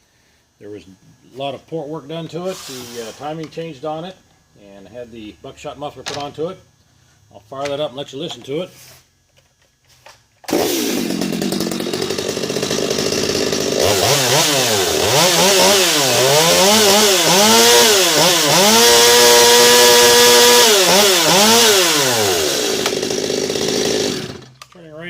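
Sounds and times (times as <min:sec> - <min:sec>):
chainsaw idling and revving: 0:10.5 - 0:24.6.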